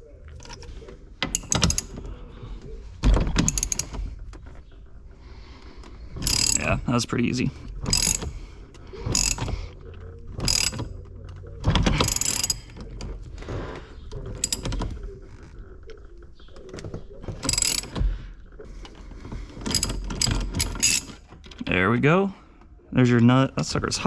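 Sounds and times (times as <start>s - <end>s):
hand ratchet clicking: 1.2s - 2.0s, 3.2s - 4.0s, 6.2s - 6.8s, 7.7s - 8.4s, 9.1s - 9.6s, 10.4s - 11.2s, 11.9s - 13.0s, 14.4s - 14.9s, 17.4s - 18.0s, 19.6s - 21.3s.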